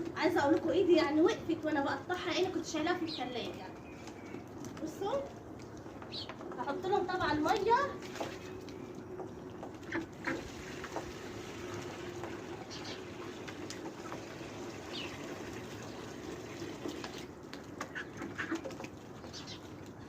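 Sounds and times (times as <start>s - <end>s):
bird chirps: 19.2s - 19.7s.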